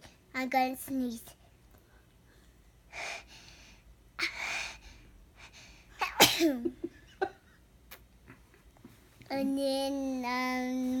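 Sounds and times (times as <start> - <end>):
child sneezing: 6.0 - 6.7.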